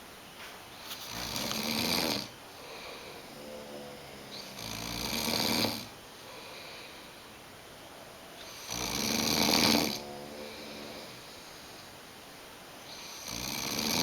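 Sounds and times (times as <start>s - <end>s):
person snoring: 1.1s - 6.8s, 8.4s - 11.5s, 13.0s - 14.0s.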